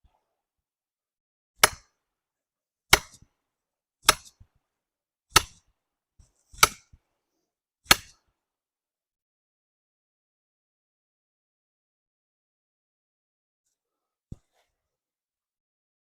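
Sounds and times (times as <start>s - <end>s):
sledgehammer striking hatchet: 1.6s - 2.0s, 2.9s - 3.3s, 4.0s - 4.4s, 5.3s - 5.7s, 6.5s - 7.0s, 7.9s - 8.2s.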